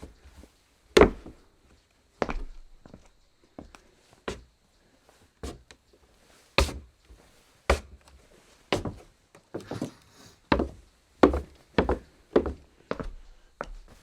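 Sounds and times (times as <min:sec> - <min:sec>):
footsteps on wooden floor: 0:01.0 - 0:01.4, 0:08.8 - 0:14.0.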